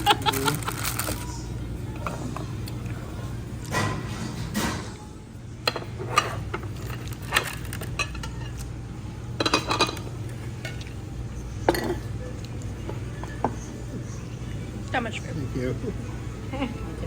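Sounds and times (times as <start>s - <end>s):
steady low hum: 0.0s - 17.0s
cutlery clinking against dishes: 3.6s - 5.0s, 5.6s - 8.7s, 9.4s - 11.0s, 11.6s - 13.7s.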